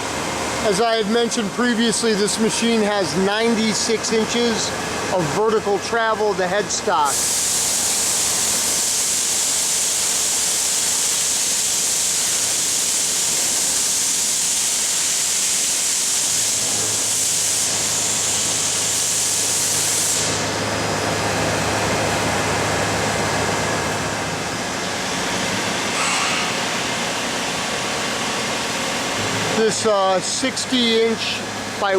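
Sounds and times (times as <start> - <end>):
boring mill machine running: 0.0 - 6.8, 20.4 - 31.9.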